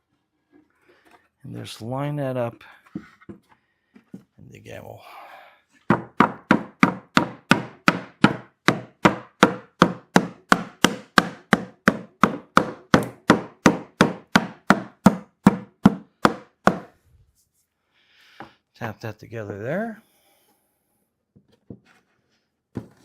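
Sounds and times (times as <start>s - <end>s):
rubber mallet tapping wood: 5.9s - 16.9s.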